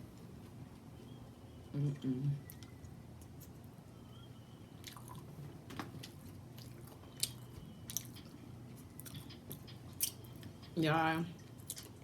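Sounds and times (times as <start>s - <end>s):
person chewing food: 4.8s - 5.4s, 6.0s - 10.5s, 11.4s - 12.0s.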